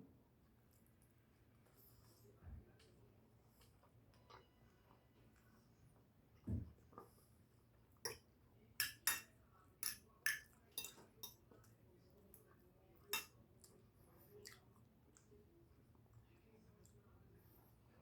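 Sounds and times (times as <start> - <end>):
cutlery clinking on a plate: 8.8 - 11.5, 13.1 - 13.4.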